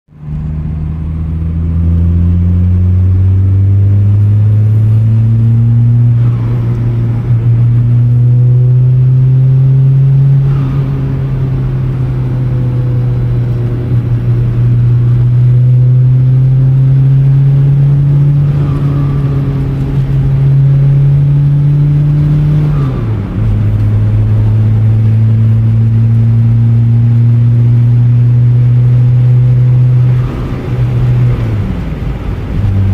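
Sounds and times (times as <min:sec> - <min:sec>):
turbocharger whistling: 0:17.1 - 0:23.6.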